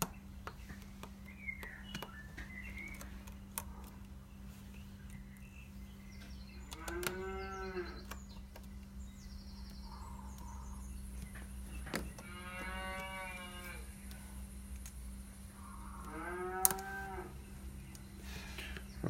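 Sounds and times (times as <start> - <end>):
sharp clicks: 0.0 - 4.2, 6.2 - 15.2, 15.9 - 16.9
low hum: 0.0 - 19.0
cattle mooing: 6.8 - 8.0, 12.2 - 13.9, 15.6 - 17.4.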